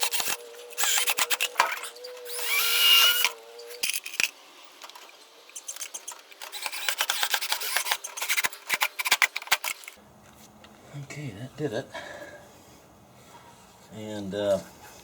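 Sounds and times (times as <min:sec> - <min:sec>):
power drill motor whine: 0:00.0 - 0:04.0.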